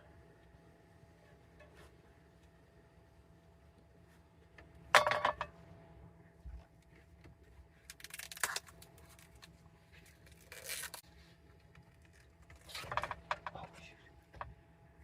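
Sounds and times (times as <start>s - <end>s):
faint steady hum: 0.0s - 15.0s
scraping and crinkling handling noise: 6.4s - 14.6s.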